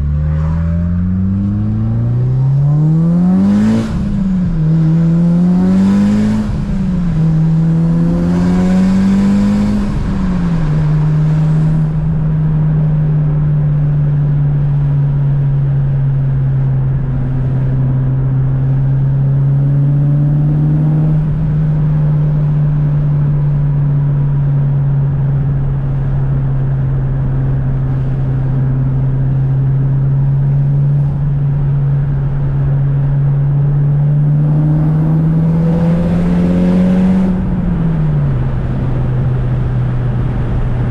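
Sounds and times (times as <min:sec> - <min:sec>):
turbocharged car engine revving: 0:00.0 - 0:13.7, 0:29.6 - 0:40.9.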